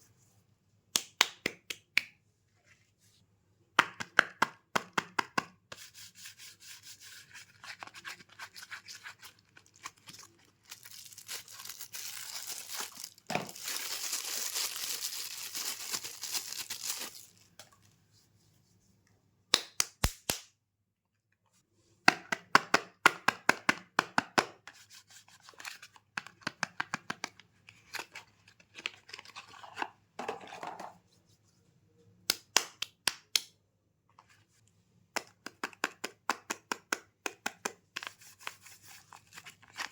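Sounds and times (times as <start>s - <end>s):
wrapper tearing and crinkling: 9.4s - 17.5s.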